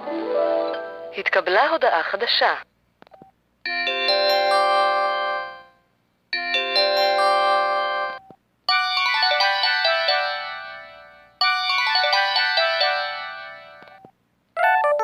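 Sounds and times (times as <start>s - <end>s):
phone chiming alert melody: 3.7s - 5.7s, 6.4s - 14.0s, 14.6s - 15.0s.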